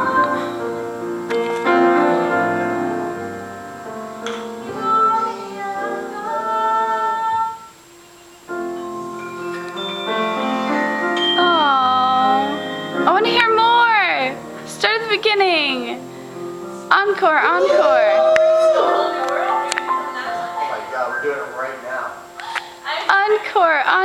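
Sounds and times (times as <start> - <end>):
person singing: 0.0 - 3.3, 4.6 - 7.9, 8.7 - 14.4
piano playing held notes: 0.0 - 24.0.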